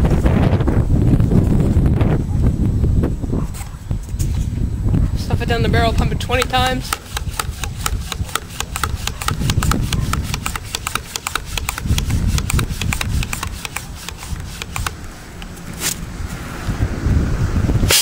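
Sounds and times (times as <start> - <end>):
clicking pump strokes: 6.0 - 16.0.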